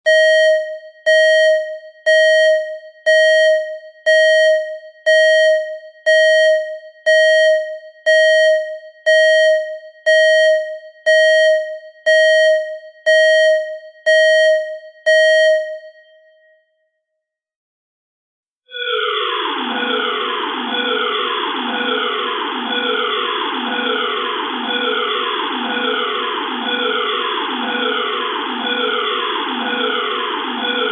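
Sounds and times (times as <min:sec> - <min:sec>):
buzzy electronic alarm beeps: 0:00.1 - 0:16.5, 0:18.8 - 0:30.9.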